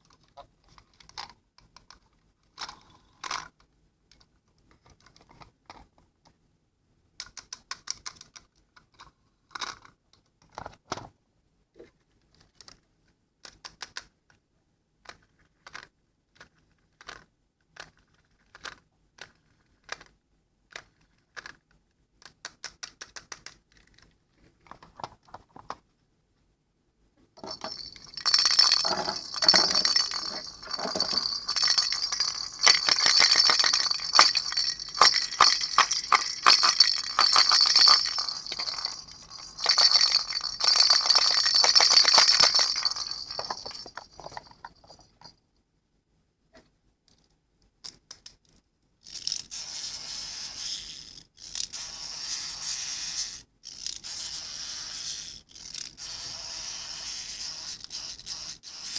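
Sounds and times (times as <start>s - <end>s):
small hard objects clicking: 27.4s - 45.3s
small hard pieces rattling: 27.4s - 45.3s.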